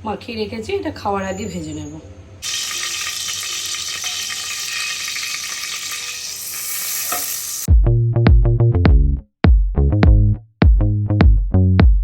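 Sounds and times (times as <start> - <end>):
food sizzling in hot oil: 2.4 - 7.7.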